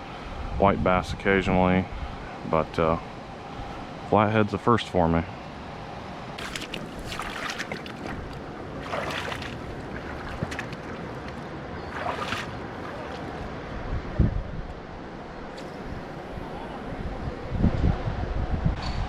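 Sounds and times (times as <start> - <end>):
wind on microphone: 0.0 - 2.3, 13.3 - 14.9, 15.5 - 19.0
river water rushing: 5.7 - 14.0.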